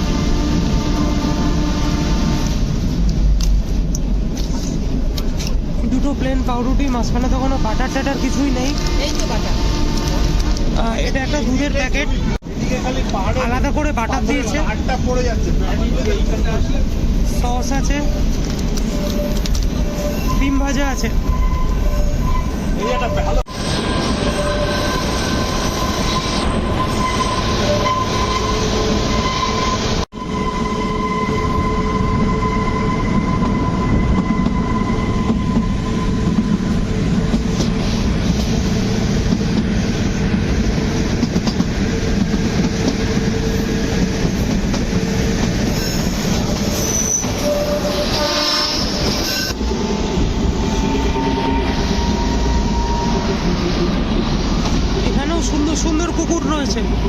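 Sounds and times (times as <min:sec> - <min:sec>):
train wheels rumbling on track: 0:00.0 - 0:57.0
wheel squeals: 0:18.3 - 0:36.6, 0:45.6 - 0:49.6.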